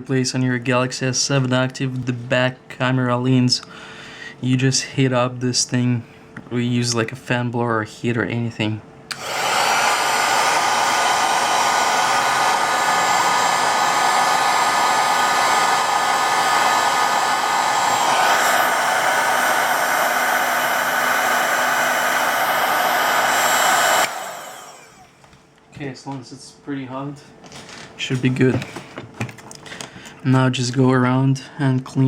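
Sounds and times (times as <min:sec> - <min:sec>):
hot-air blower running: 0:09.1 - 0:25.3.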